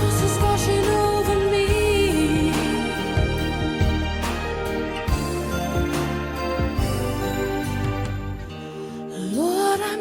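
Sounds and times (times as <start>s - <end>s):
sustained chords: 0.1s - 8.7s
drum hits: 1.7s - 8.4s.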